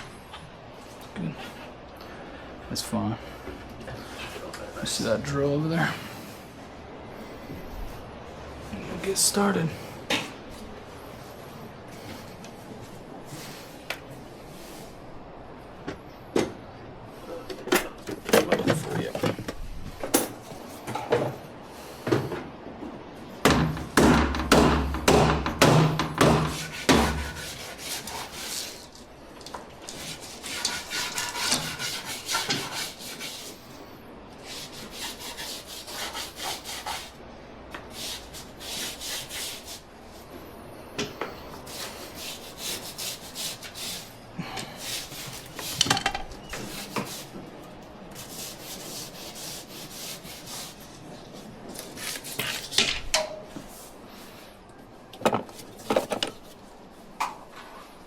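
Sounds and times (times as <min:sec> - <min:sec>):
sharp knocks: 0:23.4 - 0:27.2
tools scraping and rubbing: 0:26.1 - 0:33.7, 0:34.4 - 0:37.2, 0:41.6 - 0:47.3, 0:48.2 - 0:52.9.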